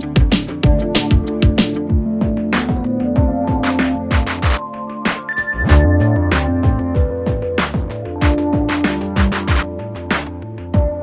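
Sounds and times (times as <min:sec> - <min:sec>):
electronic music: 0:00.0 - 0:11.0
sustained synth notes: 0:05.4 - 0:09.4.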